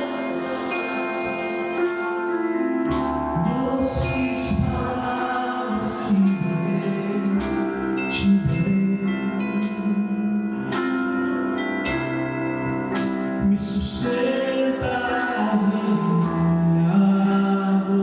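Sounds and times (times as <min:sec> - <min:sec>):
keyboard chords: 0:00.0 - 0:18.0
person singing: 0:00.0 - 0:18.0
cymbal or drum strikes: 0:03.8 - 0:05.4.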